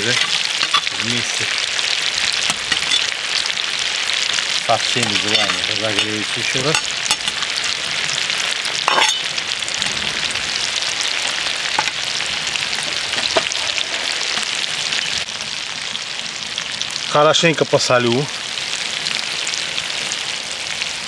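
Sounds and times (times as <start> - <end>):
utensil knocking on pan: 0.0 - 1.3, 2.2 - 3.1, 4.3 - 7.9, 8.6 - 10.0, 11.8 - 12.0
food sizzling in fat: 0.0 - 21.0.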